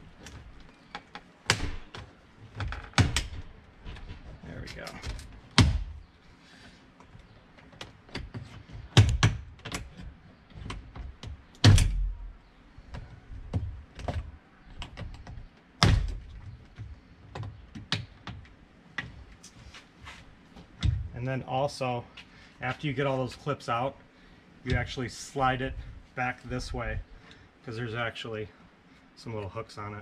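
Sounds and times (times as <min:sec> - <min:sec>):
loud thunks: 0:05.0 - 0:06.0, 0:11.6 - 0:12.2, 0:15.8 - 0:16.4.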